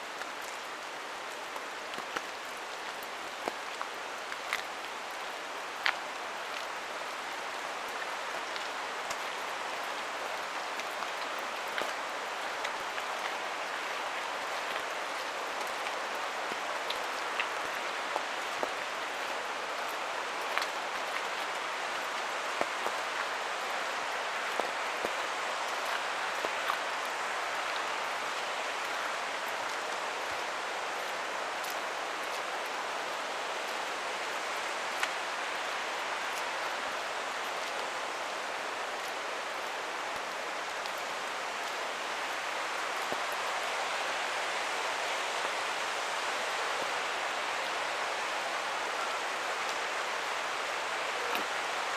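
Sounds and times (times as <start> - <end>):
steady rain in forest: 0.0 - 51.9
sharp taps of raindrops: 1.3 - 5.0, 51.3 - 51.6.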